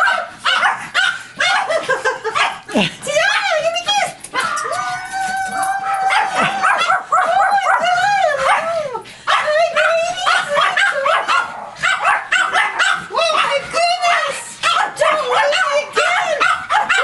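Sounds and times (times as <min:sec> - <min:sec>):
dogs whining and yipping: 0:04.2 - 0:08.9.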